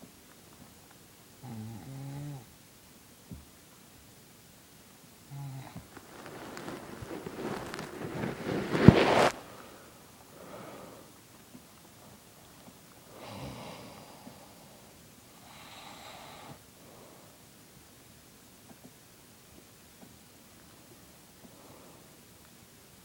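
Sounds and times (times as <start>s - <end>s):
person snoring: 13.1s - 14.3s.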